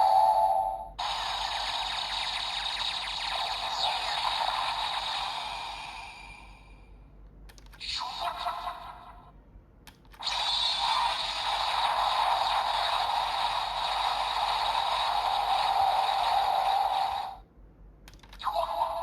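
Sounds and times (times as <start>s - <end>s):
toy electronic sound effect: 0.0s - 6.8s, 7.8s - 9.2s, 10.2s - 17.4s, 18.4s - 19.0s.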